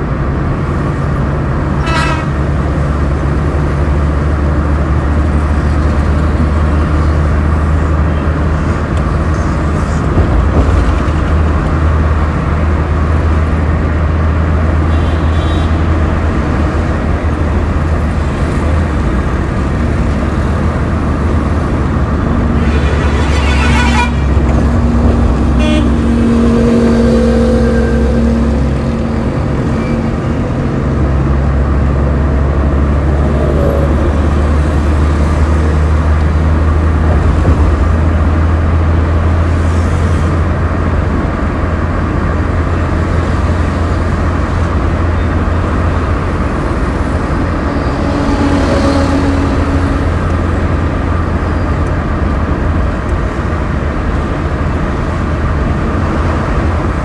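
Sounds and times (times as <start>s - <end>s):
traffic rumble: 0.0s - 57.0s
car horns tooting: 1.8s - 2.7s, 14.7s - 16.5s, 22.1s - 30.7s, 45.0s - 51.6s
held pitched tone: 22.4s - 30.6s.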